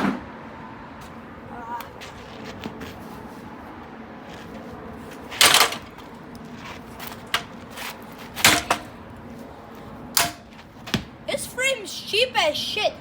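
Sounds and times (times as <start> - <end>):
heavy blows on steel frame: 8.4 - 9.0, 10.2 - 11.1.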